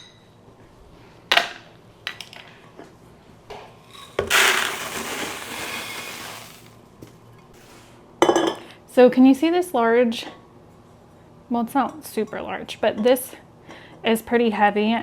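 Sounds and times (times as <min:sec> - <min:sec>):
oats pouring into a container: 0:03.9 - 0:06.8
container knock: 0:04.0 - 0:06.7.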